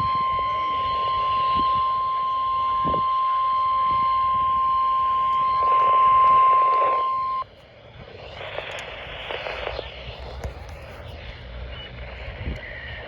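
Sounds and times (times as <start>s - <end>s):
steady high alarm tone: 0.0s - 7.4s
radio hiss: 0.0s - 13.0s.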